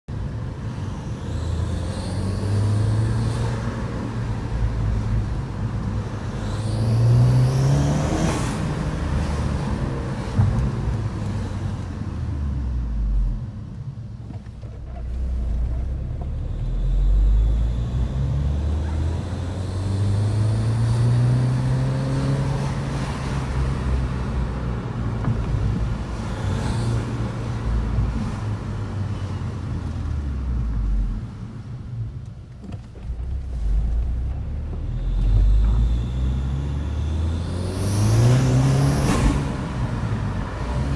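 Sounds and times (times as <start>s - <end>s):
car engine revving: 1.3s - 11.6s, 33.1s - 40.9s.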